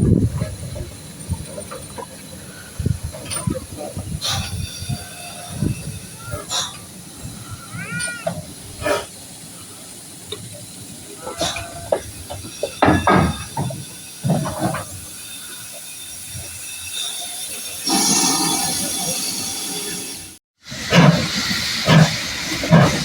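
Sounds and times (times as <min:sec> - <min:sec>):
steam locomotive hissing: 0:00.0 - 0:23.0.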